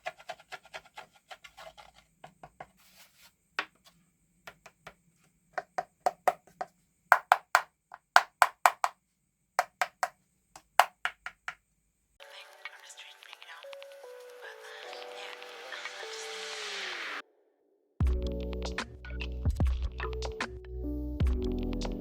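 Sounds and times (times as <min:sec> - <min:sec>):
sharp wood-block-like knocks: 0:05.6 - 0:08.9, 0:09.6 - 0:11.6.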